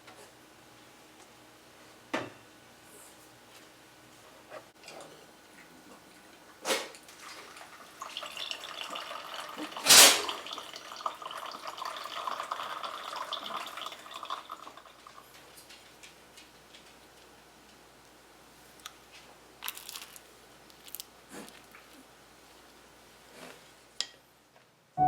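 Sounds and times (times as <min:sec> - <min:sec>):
water running: 0:07.0 - 0:15.4.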